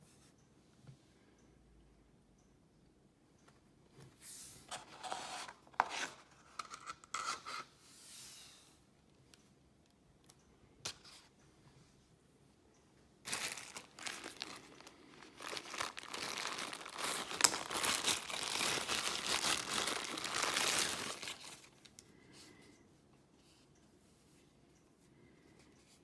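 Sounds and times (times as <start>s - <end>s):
sheet material crinkling: 13.3s - 22.0s.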